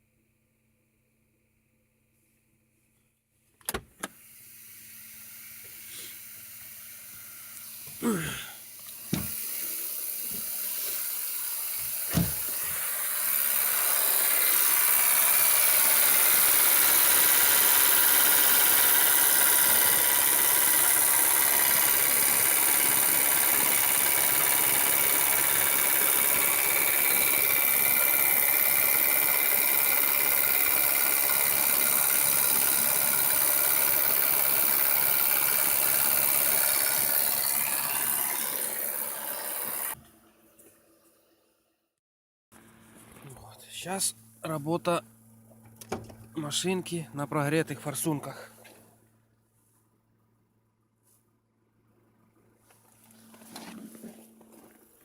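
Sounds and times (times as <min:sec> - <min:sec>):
rapid injector clatter: 0:08.7 - 0:40.0
knocks and thumps: 0:09.1 - 0:09.4, 0:11.8 - 0:12.7.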